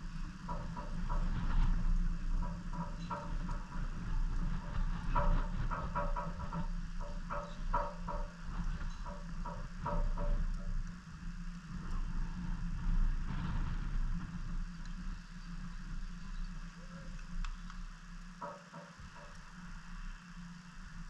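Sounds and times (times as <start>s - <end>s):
low outdoor rumble: 0.0s - 21.0s
faint click: 17.1s - 17.8s.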